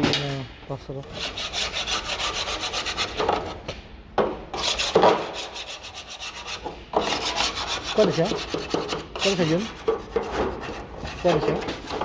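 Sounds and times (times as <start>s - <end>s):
fast back-and-forth scraping: 4.6s - 12.0s.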